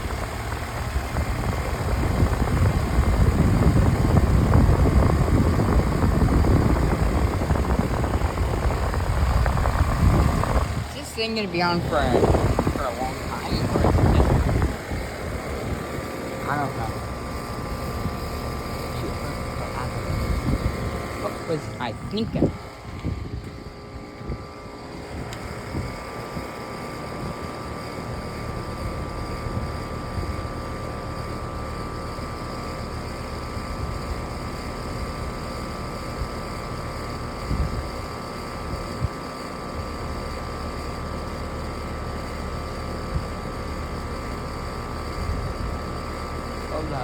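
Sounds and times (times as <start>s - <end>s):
faint whine: 0.0s - 26.5s
air-conditioner unit humming: 0.0s - 47.0s.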